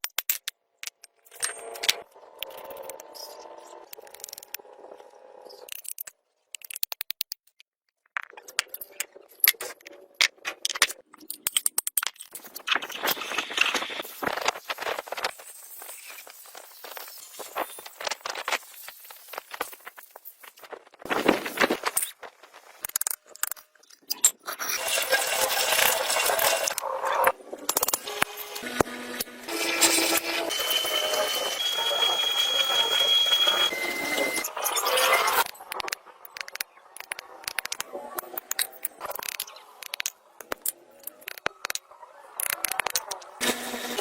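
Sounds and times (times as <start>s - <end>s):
sharp clicks and taps: 5.7s - 8.7s, 35.4s - 41.8s.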